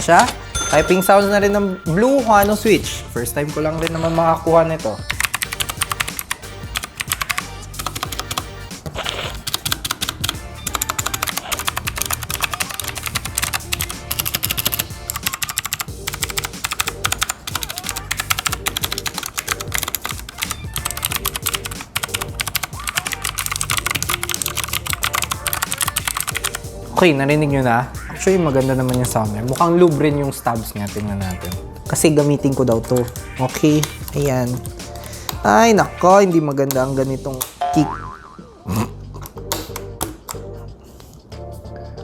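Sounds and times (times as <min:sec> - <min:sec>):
clicky mechanical keyboard typing: 0:05.1 - 0:08.4, 0:09.4 - 0:26.6.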